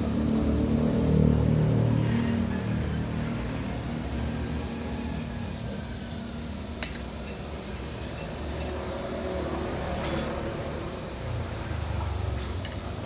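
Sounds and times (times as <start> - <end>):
utensil clinking against dish: 6.9 - 8.9.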